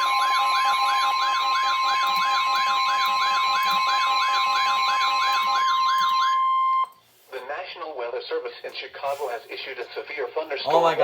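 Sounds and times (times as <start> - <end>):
fast warbling siren: 0.0 - 6.9
steady warning alarm tone: 0.0 - 7.0.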